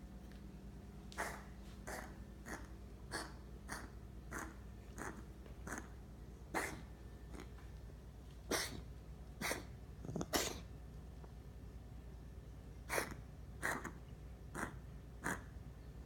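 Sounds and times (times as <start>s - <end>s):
pet coughing and hacking: 1.2s - 7.7s, 8.4s - 10.7s, 12.8s - 15.5s.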